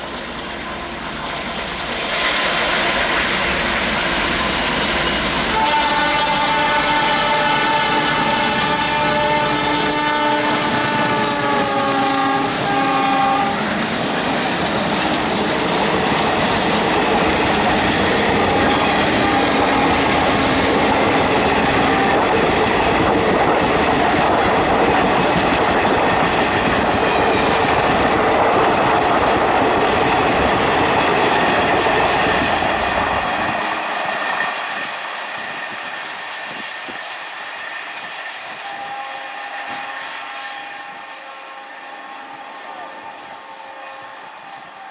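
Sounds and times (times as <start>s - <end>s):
train coaches clattering on rails: 0.0s - 44.9s
locomotive horn: 5.4s - 14.6s, 17.5s - 22.2s, 38.5s - 44.9s.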